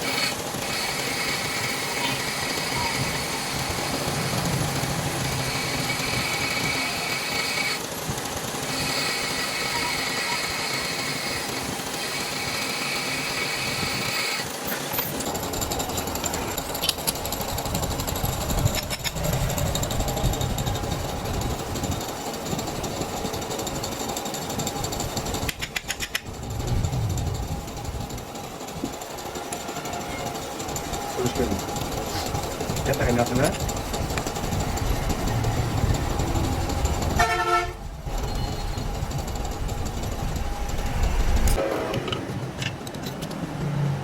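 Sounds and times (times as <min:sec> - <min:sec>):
metal lathe whining: 0:00.0 - 0:43.3.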